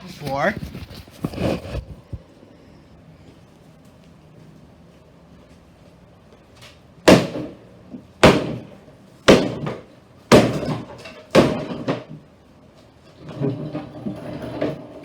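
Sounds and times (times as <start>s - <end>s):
axe striking wooden cabinet: 7.1s - 7.6s, 8.2s - 8.7s, 9.3s - 12.1s.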